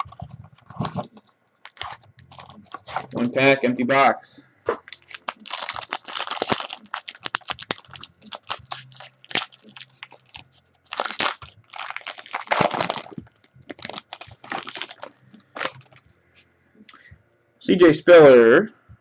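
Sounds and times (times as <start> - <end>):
card pack wrapper tearing and crinkling: 0.0 - 3.3, 4.8 - 16.0
cards rustling and clicking: 0.0 - 3.3, 4.7 - 16.0.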